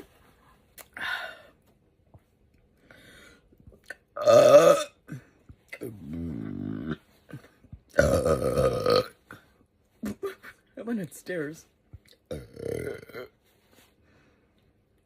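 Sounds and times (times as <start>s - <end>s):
woman burping: 4.2s - 7.0s, 7.9s - 9.3s, 12.3s - 13.4s.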